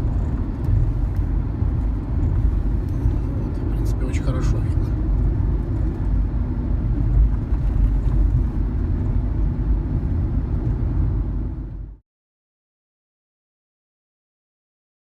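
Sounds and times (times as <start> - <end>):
car cabin road rumble: 0.0 - 12.0.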